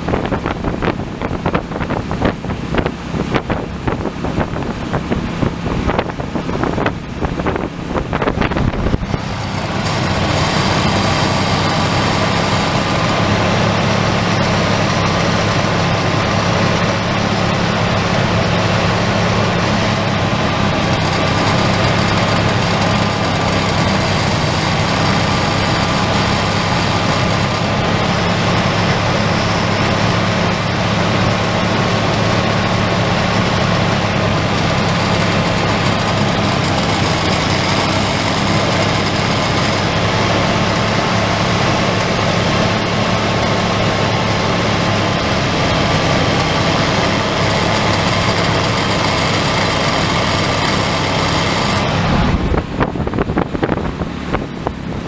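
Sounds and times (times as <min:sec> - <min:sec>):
wind buffeting microphone: 0:00.0 - 0:10.3, 0:52.0 - 0:55.0
engine running: 0:00.0 - 0:55.0.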